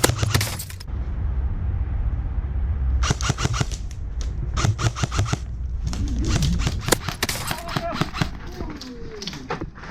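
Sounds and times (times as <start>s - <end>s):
low rumble: 0.8s - 7.0s
airsoft guns firing bursts: 4.6s - 5.4s.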